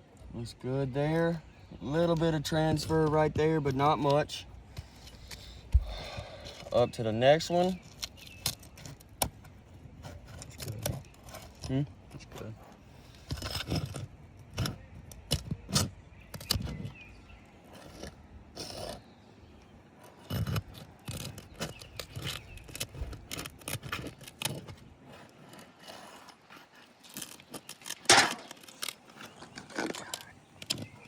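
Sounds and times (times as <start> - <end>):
scraping under roof shingles: 0.8 - 31.0
sharp crack: 27.8 - 30.3.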